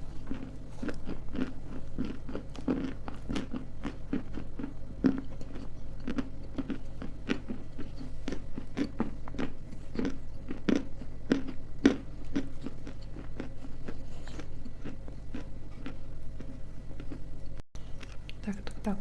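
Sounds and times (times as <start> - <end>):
clay crunched and chewed: 0.0 - 18.4.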